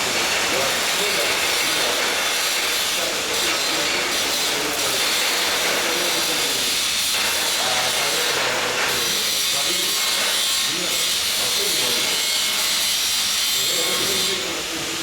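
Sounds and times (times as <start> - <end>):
welding arc hissing: 0.0 - 15.0.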